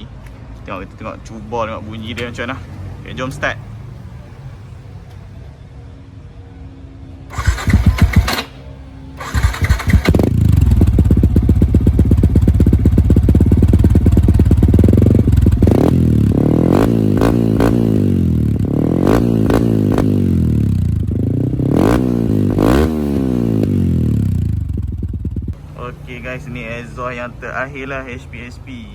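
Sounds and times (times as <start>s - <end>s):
motorcycle engine cranking: 7.3s - 15.7s
motorcycle engine idling and revving: 7.3s - 28.5s.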